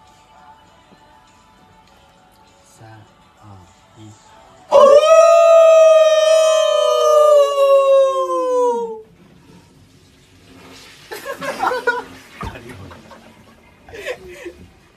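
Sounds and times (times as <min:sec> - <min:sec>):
man imitating wolf howl: 0:04.7 - 0:09.0.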